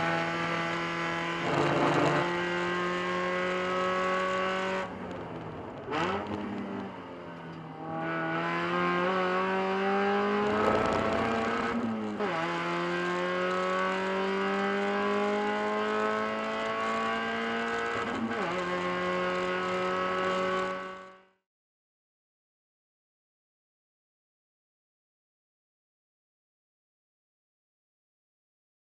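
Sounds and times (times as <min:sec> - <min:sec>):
race car engine accelerating: 0:00.0 - 0:07.1, 0:07.7 - 0:21.3.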